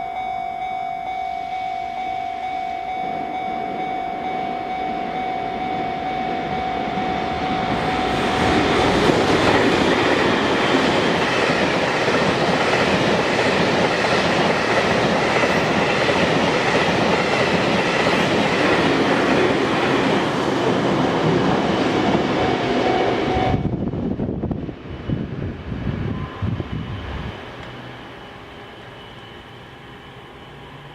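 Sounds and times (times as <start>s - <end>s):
level-crossing warning bell: 0.0s - 23.9s, 24.6s - 30.9s
freight train passing at speed: 0.0s - 30.9s
train wheels clickety-clack: 6.7s - 23.3s.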